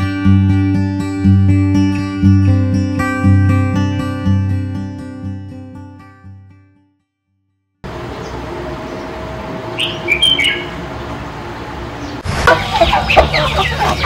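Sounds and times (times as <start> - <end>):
outdoor background hiss: 7.8 - 14.0
bird chirping: 8.0 - 14.0
many short bird calls: 9.8 - 10.8, 12.0 - 14.0.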